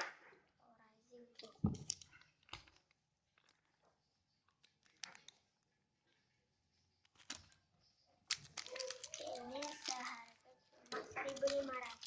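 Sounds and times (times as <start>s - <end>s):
faint clicks and taps: 1.3s - 6.4s.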